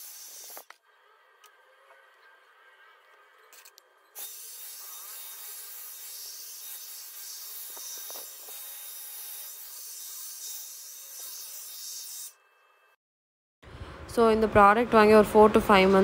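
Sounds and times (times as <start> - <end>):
hot-air brush blowing: 0.0 - 0.7.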